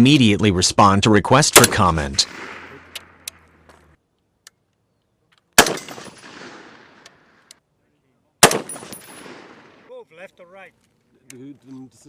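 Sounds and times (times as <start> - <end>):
rifle shots with echo: 1.5 - 3.4, 5.6 - 7.3, 8.4 - 9.9.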